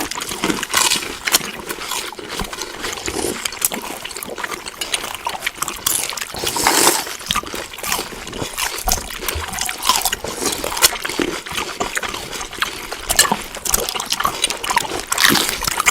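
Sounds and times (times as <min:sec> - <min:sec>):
wet chewing and mouth smacking: 0:00.0 - 0:15.9.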